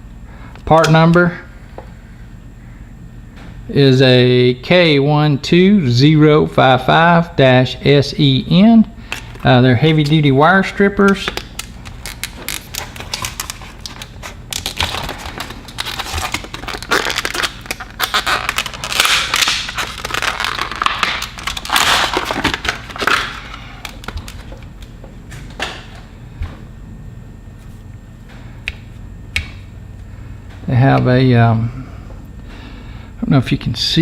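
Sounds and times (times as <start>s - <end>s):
packaging being torn open: 11.2s - 24.7s.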